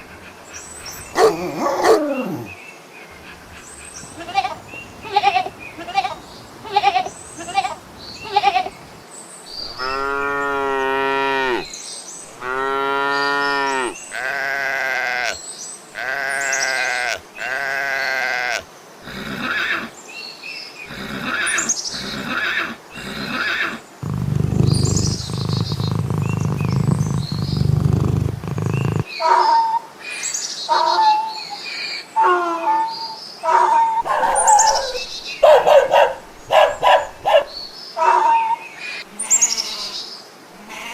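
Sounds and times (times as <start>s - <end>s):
farm animals calling: 0.8s - 2.5s, 3.2s - 9.0s, 20.9s - 29.8s, 32.2s - 40.0s.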